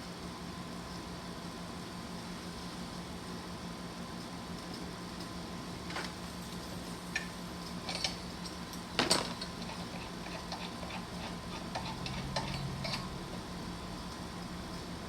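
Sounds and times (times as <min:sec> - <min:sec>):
metal tools clicking and clattering: 0:07.8 - 0:13.2.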